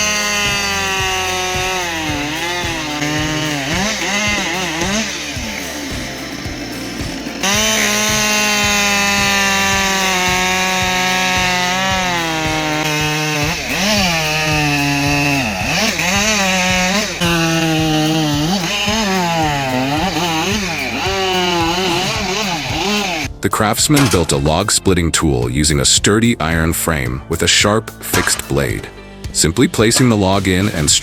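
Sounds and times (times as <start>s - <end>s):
chainsaw cutting wood: 0.0s - 23.4s, 29.2s - 31.0s.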